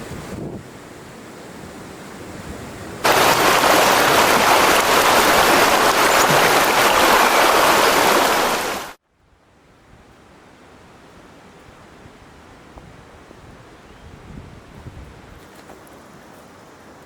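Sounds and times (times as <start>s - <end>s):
rushing water: 3.0s - 9.0s.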